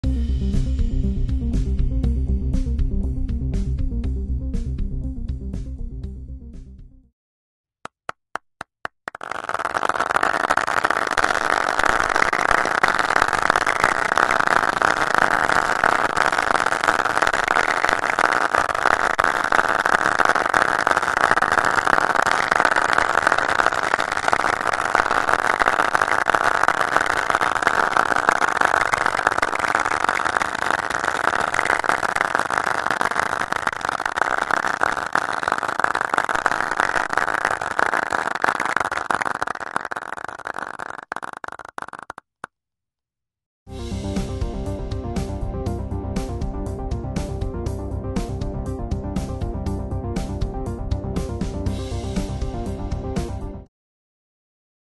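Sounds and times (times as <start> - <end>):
hand claps: 7.8 - 42.2
dense overlapping applause: 9.1 - 42.2.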